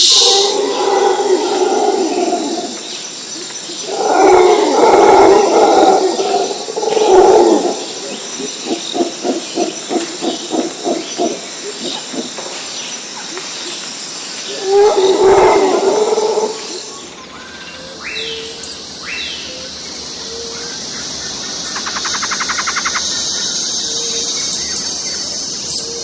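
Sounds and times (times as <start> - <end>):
wild animal calling: 17.2 - 26.0.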